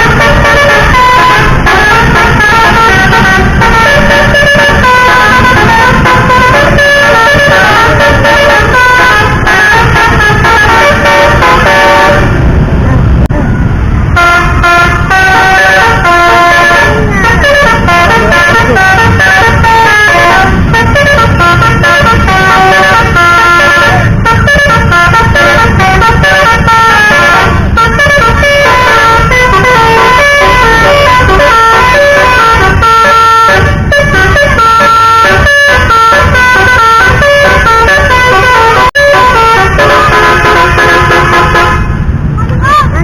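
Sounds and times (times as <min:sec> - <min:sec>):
musical air horn tune: 0:00.0 - 0:12.6, 0:14.1 - 0:42.0
low vehicle rumble: 0:00.0 - 0:43.0.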